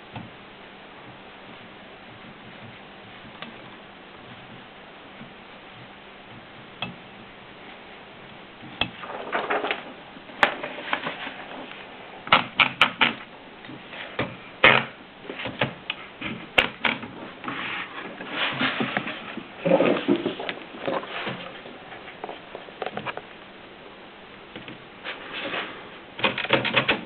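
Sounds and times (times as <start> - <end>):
typewriter rattling clatter: 9.0 - 11.4, 26.2 - 27.0.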